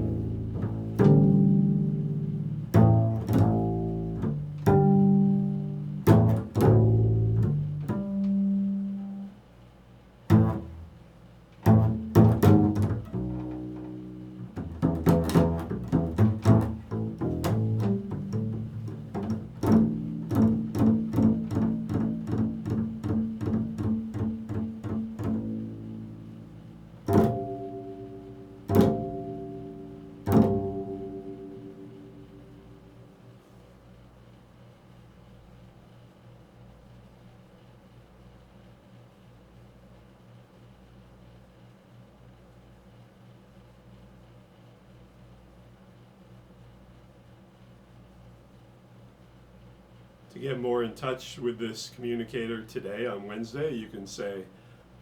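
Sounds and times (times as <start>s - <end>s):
double bass playing jazz: 0.0s - 9.4s, 10.3s - 33.4s.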